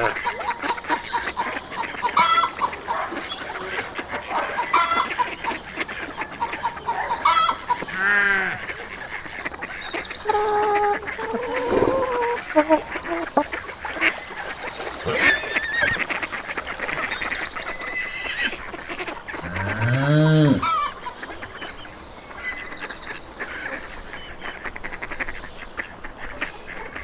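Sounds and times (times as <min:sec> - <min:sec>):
low drawn-out bird call: 0:00.0 - 0:16.1, 0:19.2 - 0:21.0
geese honking: 0:00.0 - 0:21.4
fowl chatter: 0:00.0 - 0:27.0.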